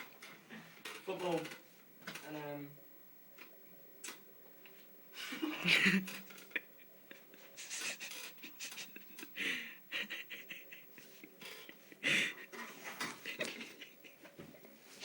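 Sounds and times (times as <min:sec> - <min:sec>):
small clicks and rustles: 0:00.0 - 0:02.4, 0:03.4 - 0:06.6, 0:07.7 - 0:09.3
person breathing out hard: 0:09.4 - 0:09.8.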